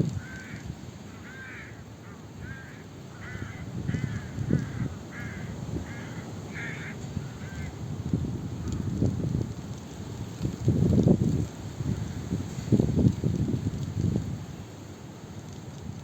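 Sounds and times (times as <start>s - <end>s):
bird calling: 0.2s - 7.8s.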